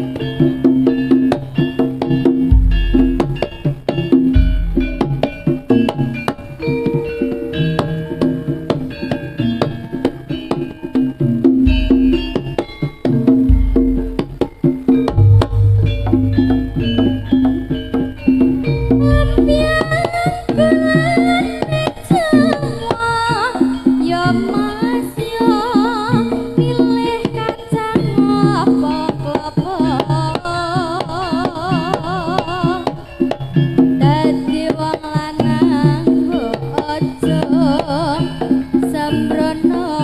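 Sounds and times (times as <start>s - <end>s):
hand drum patterns: 0.0s - 40.0s
wavering melody with vibrato: 1.0s - 40.0s.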